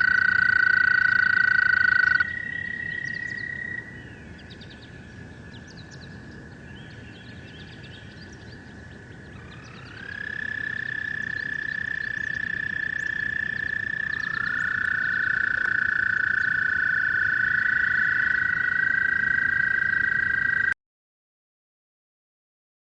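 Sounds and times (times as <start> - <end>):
toads trilling: 0.0 - 3.9, 9.2 - 20.7.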